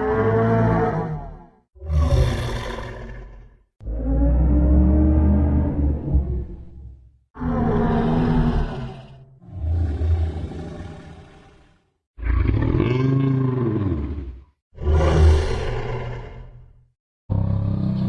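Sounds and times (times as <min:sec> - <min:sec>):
deep dinosaur calls: 0:00.0 - 0:06.7.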